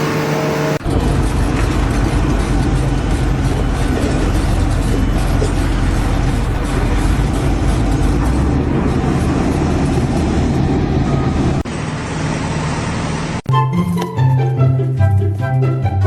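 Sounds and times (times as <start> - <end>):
heavy engine running: 0.0 - 16.0.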